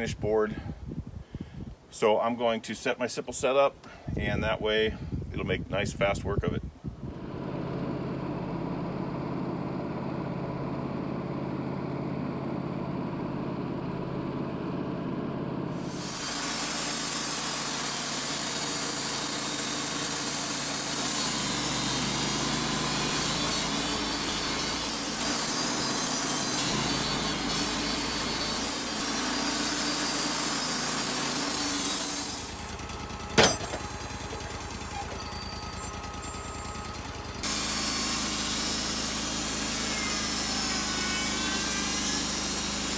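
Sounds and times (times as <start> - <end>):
sawmill engine humming: 7.2 - 42.9
band blade cutting log: 15.8 - 32.7, 37.4 - 42.9.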